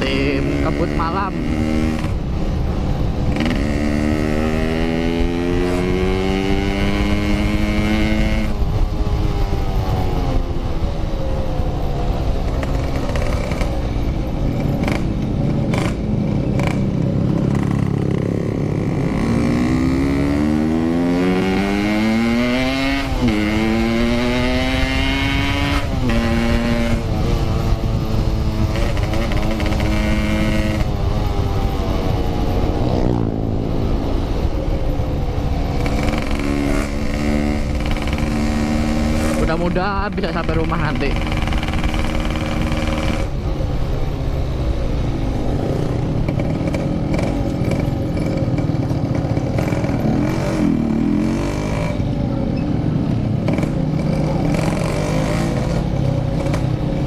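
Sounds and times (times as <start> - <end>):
motorcycle engine accelerating: 0.0 - 57.0.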